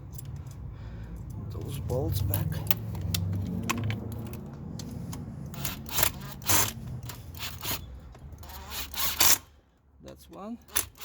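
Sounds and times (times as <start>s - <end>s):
bolts clicking and scraping: 0.0s - 11.0s
loud scraping strokes: 5.5s - 9.5s.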